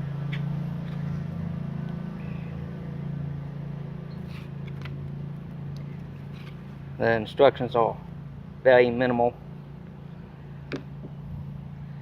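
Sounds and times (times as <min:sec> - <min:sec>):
low hum: 0:00.0 - 0:08.6.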